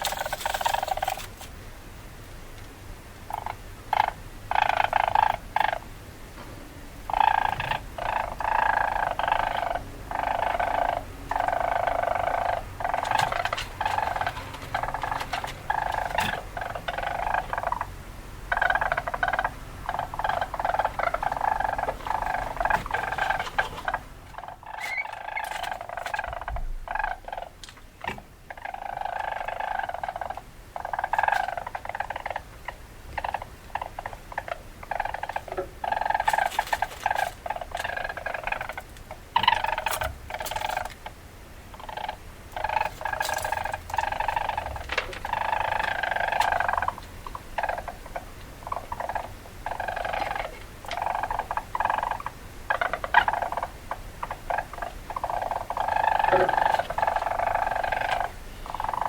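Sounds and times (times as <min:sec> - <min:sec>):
weasel chattering calls: 0:00.0 - 0:01.4, 0:03.3 - 0:05.9, 0:07.1 - 0:59.0.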